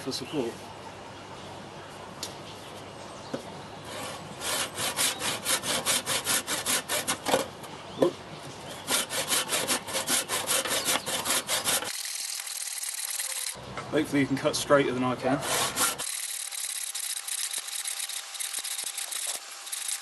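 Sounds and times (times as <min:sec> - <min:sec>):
hand saw cutting log: 0:03.9 - 0:07.5, 0:08.7 - 0:12.6, 0:15.2 - 0:20.0.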